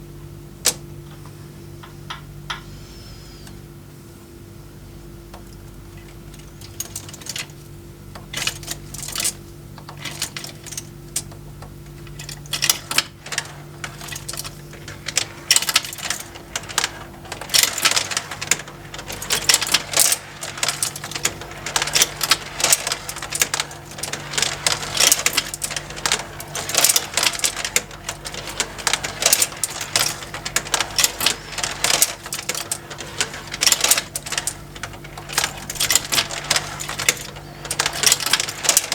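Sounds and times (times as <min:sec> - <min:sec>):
marbles clicking on plastic tracks: 0:12.1 - 0:38.9.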